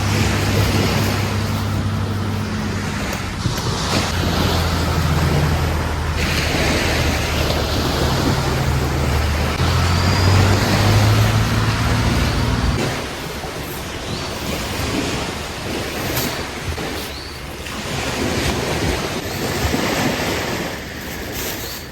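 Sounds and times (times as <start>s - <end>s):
low steady drone: 0.0s - 16.7s
ocean waves on a beach: 0.0s - 21.9s
wind buffeting microphone: 0.0s - 21.9s.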